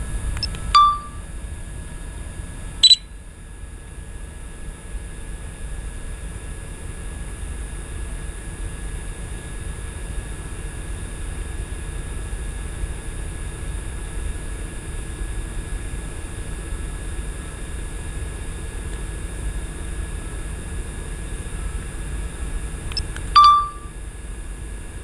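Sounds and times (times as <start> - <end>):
faint high whines: 0.4 - 1.2, 2.8 - 3.1, 22.9 - 24.0.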